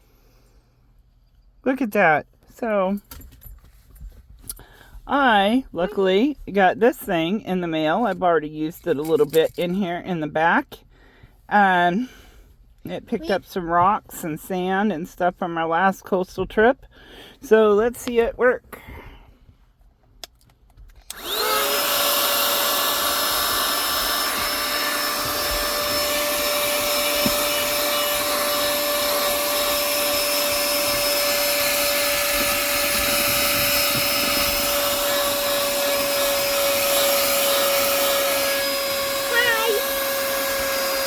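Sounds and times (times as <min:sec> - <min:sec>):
handheld vacuum motor whining: 0:21.0 - 0:41.0.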